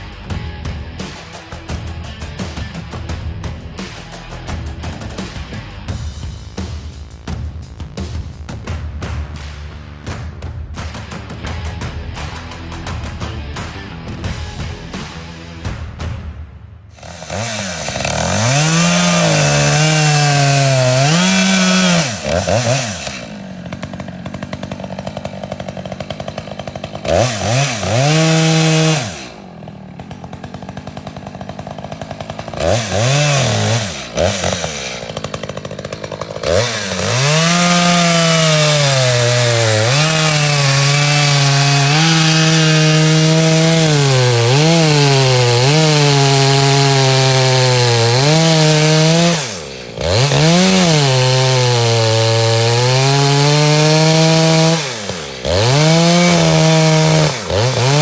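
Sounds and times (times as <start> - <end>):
chainsaw revving: 17.0 - 58.0.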